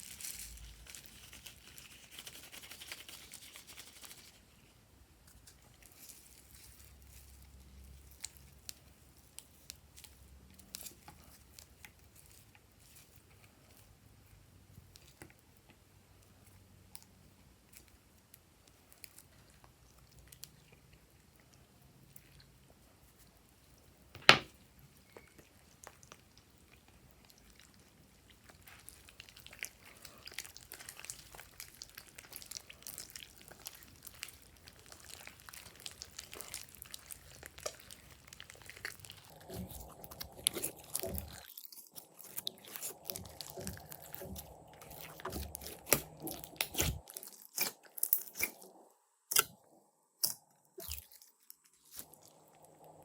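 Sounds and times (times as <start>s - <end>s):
slime crackling and popping: 25.0s - 48.6s.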